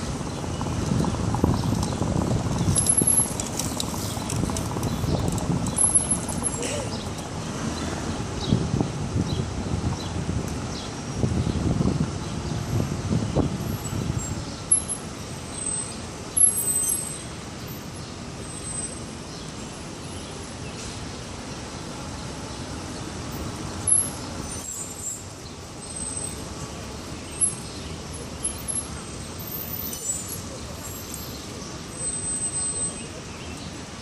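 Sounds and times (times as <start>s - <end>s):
heavy vehicle rumbling past: 0.0s - 14.6s
roadway hum: 0.0s - 34.0s.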